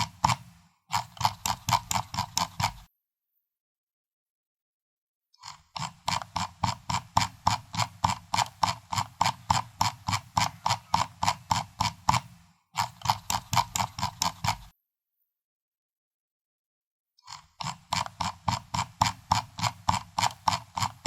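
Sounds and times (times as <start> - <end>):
mouse scroll wheel clicking: 0.0 - 2.9, 5.4 - 14.8, 17.3 - 21.0.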